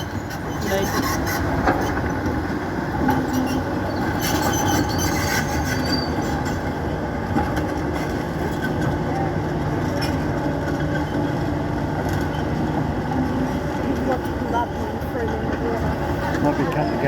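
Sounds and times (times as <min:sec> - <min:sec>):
metal squeaks and creaks: 0:00.0 - 0:02.2, 0:03.1 - 0:06.7
clanking excavator tracks: 0:00.0 - 0:17.0
diesel engine running: 0:06.2 - 0:17.0.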